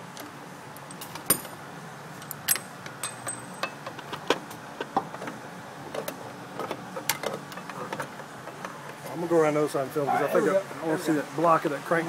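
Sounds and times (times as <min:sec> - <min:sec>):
metal tools clinking: 0:02.2 - 0:03.8.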